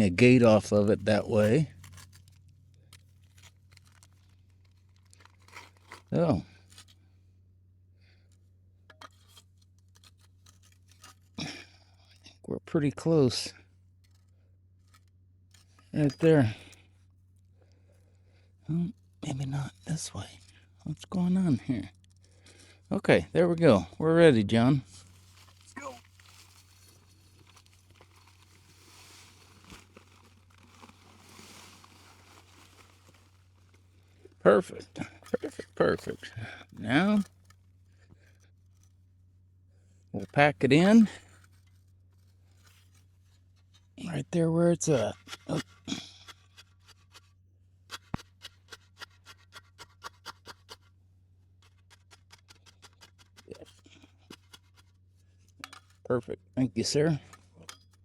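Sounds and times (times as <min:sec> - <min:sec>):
concrete mix pouring from a bag: 0:25.0 - 0:33.6.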